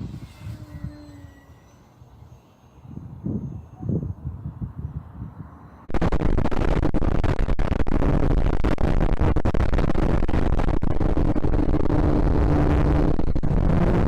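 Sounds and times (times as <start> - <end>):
wind buffeting microphone: 0.0 - 1.6, 2.8 - 14.0.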